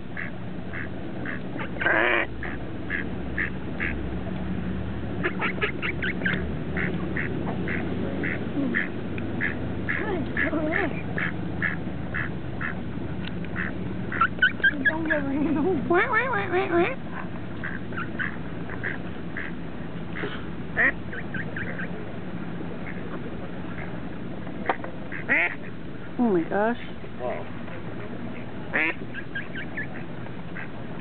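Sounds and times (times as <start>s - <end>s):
ducks quacking: 0.0s - 4.0s, 5.2s - 12.8s, 13.5s - 19.6s, 20.2s - 22.0s, 22.8s - 24.0s, 24.6s - 25.8s, 28.7s - 30.8s.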